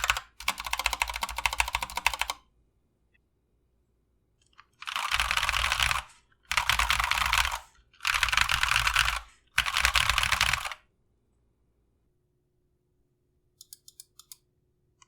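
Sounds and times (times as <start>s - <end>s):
mechanical keyboard typing: 0.0s - 2.4s, 4.8s - 10.8s, 13.6s - 14.4s.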